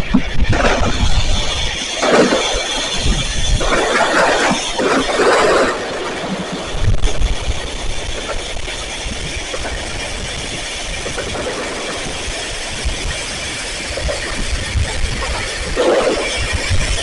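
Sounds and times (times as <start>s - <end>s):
distant fireworks rumble: 0.0s - 17.0s.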